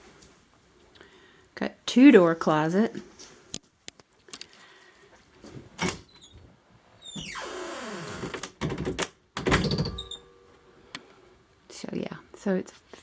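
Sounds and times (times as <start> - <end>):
closet door sliding: 5.6 - 10.3.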